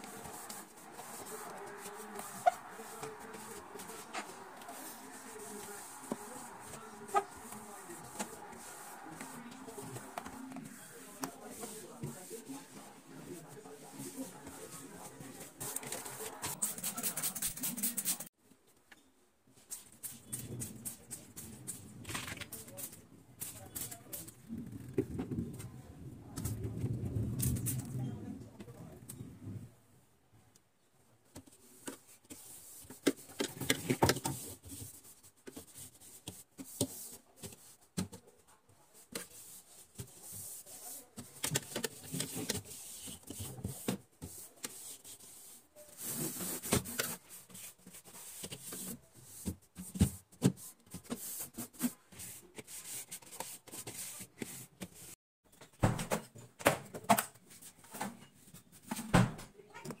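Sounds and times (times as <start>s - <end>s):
rubbing and wiping: 0.0s - 18.3s, 38.9s - 55.2s.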